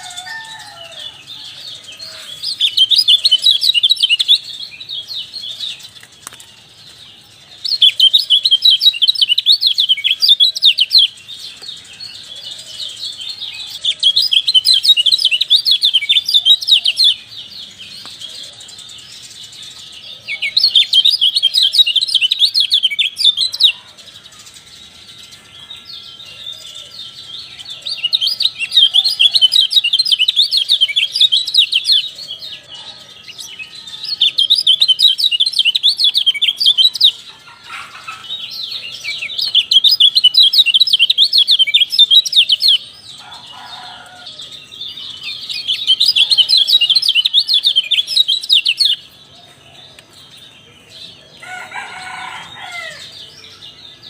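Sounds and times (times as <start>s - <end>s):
bird chattering twitter: 0.0s - 50.9s.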